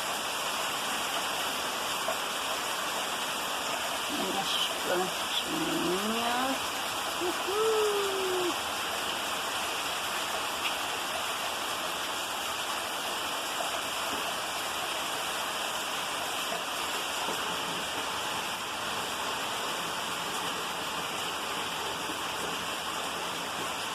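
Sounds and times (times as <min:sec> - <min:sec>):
rain downpour: 0:00.0 - 0:23.9
falling voice-like call: 0:07.2 - 0:08.6.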